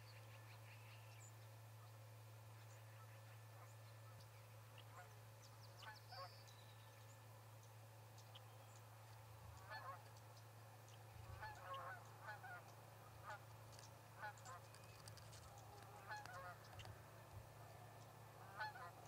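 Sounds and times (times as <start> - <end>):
small birds chirping: 0.0 - 12.9, 13.5 - 18.9
low steady hum: 0.0 - 19.0
distant geese honking: 9.4 - 10.2, 10.8 - 19.0.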